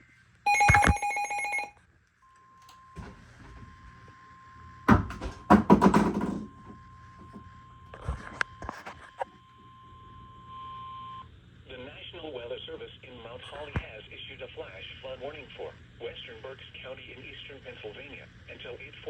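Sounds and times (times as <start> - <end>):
harsh pulsing alarm: 0.5 - 1.7
knocks: 4.9 - 6.5.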